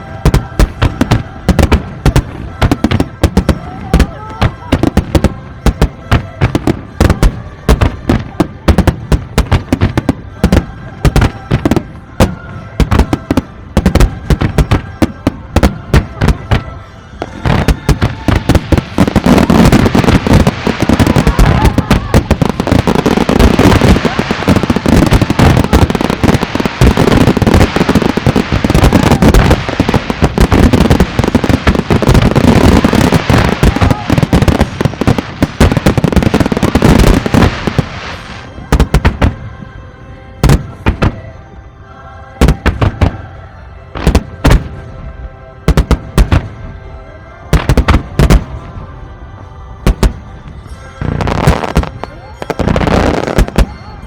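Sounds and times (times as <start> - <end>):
fireworks bursting: 0.0 - 39.5, 40.4 - 41.4, 42.4 - 43.4, 44.0 - 44.9, 45.7 - 46.6, 47.5 - 48.7, 49.8 - 54.0.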